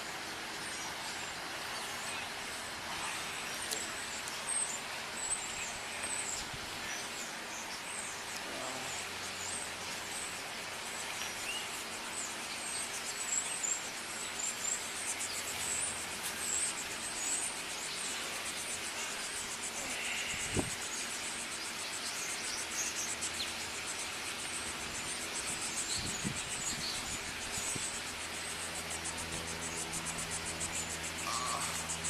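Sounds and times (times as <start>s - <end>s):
background hiss: 0.0s - 32.0s
birds chirping: 0.0s - 32.0s
insect trilling: 14.4s - 32.0s.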